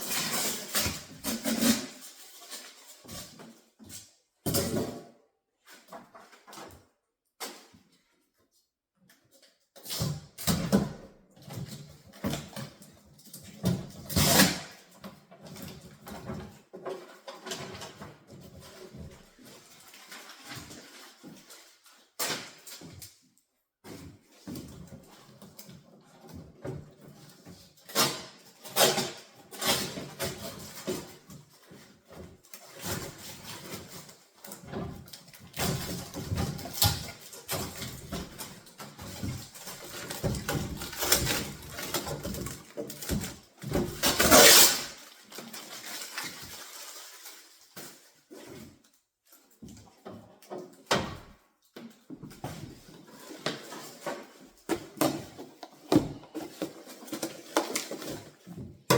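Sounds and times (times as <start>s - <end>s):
packaging knocks rustles and scrapes: 24.0s - 48.9s, 52.2s - 58.9s.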